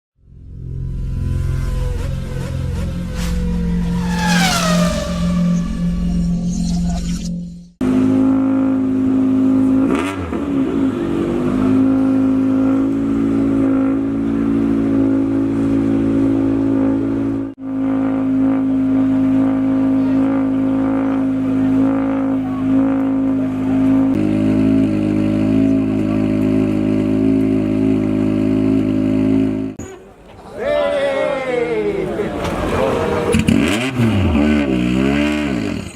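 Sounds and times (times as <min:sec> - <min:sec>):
rally car engine running loud: 0:07.8 - 0:29.8.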